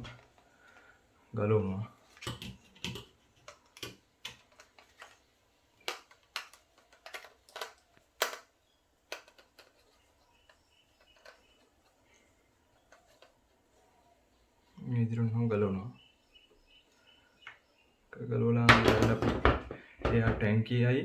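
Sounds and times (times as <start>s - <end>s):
hard plastic clicks and knocks: 18.7s - 20.5s.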